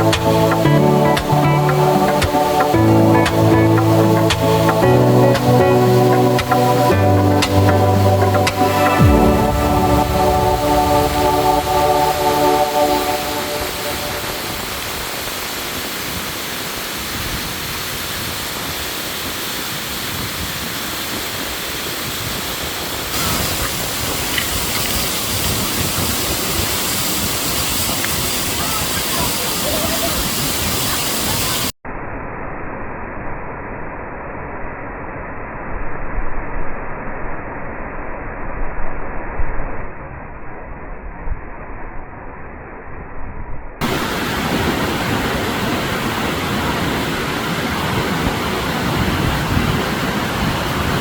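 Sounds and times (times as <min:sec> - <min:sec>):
waterfall rushing: 0:00.0 - 0:31.7, 0:43.8 - 0:51.0.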